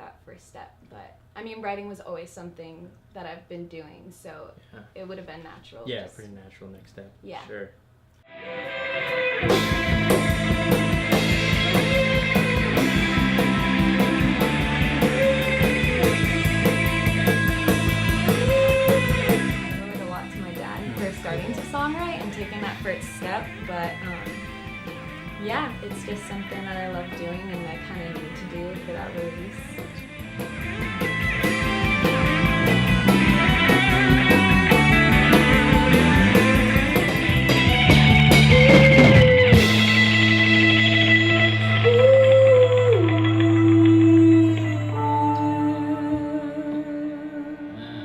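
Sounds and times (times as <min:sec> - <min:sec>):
guitar and bass chords: 0:08.2 - 0:48.0
rock band playing: 0:08.4 - 0:44.4
drum kit beat: 0:09.4 - 0:44.7.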